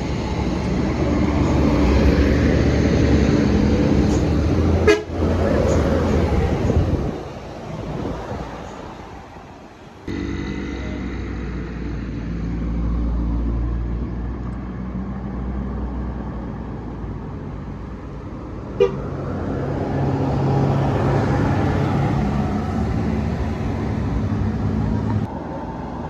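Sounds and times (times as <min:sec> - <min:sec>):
bus engine running: 0:00.0 - 0:26.0
bus horn blast: 0:04.6 - 0:05.4, 0:10.1 - 0:11.6, 0:18.8 - 0:19.1.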